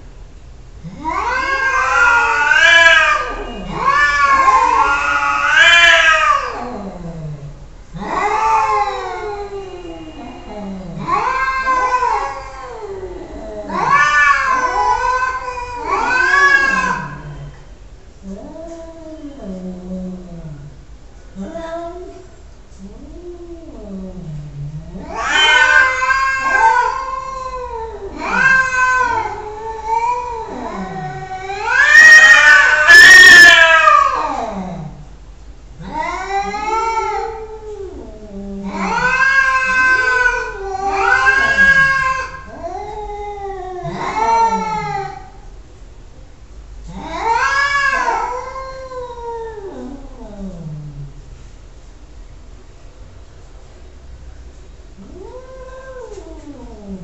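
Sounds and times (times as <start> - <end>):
cat yowling: 0.9 - 7.1, 8.0 - 17.6, 22.9 - 35.0, 35.8 - 45.4, 46.9 - 51.0, 55.0 - 57.0.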